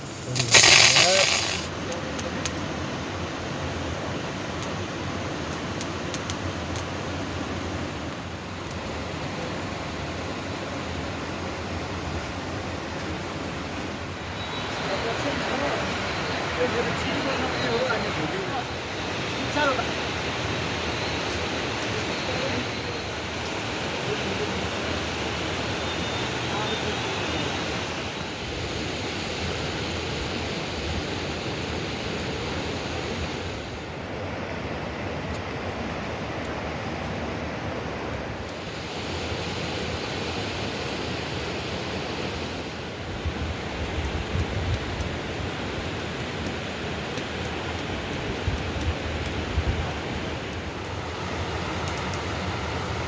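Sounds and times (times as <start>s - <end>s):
steady rushing noise: 2.7s - 53.0s
wind gusts buffeting microphone: 41.4s - 53.0s.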